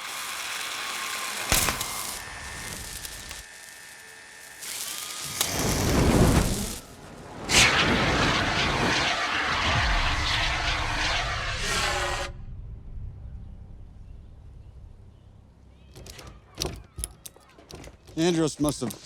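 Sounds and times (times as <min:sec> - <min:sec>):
loud rush of fire noise: 0:00.0 - 0:12.8
fire whoosh: 0:04.6 - 0:13.0.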